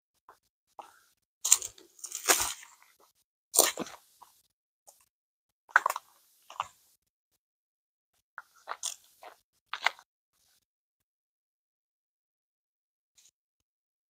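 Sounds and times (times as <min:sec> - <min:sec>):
footsteps crunching on rock: 0:01.5 - 0:02.8.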